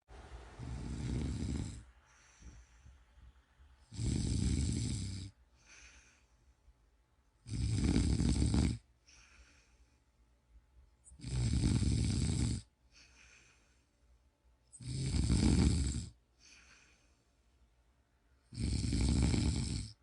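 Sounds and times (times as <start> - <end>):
soft breathing: 0.1 - 7.0, 8.8 - 11.2, 12.8 - 14.4, 16.2 - 18.4
person snoring: 0.6 - 2.0, 3.8 - 6.0, 7.4 - 9.4, 11.1 - 13.4, 14.7 - 16.9, 18.5 - 20.0.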